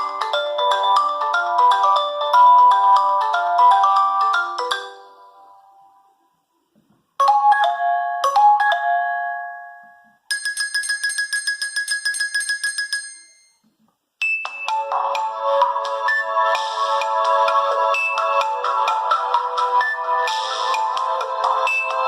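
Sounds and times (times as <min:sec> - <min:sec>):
phone ringtone melody: 0:00.0 - 0:05.6, 0:07.2 - 0:13.6, 0:14.2 - 0:22.0.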